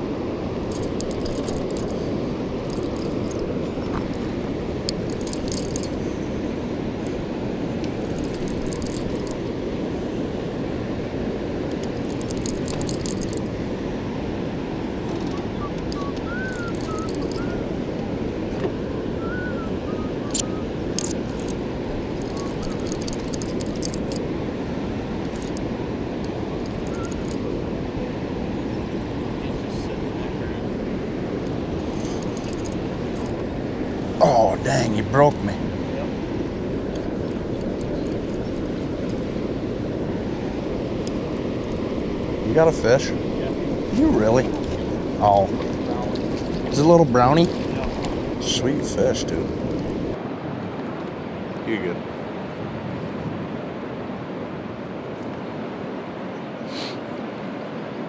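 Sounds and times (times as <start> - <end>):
river water roaring: 0.0 - 58.0.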